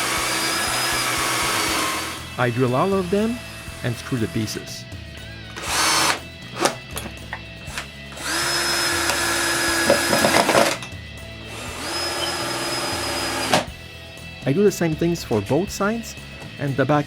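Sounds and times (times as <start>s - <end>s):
power drill whining: 0.0s - 4.6s, 5.2s - 13.8s.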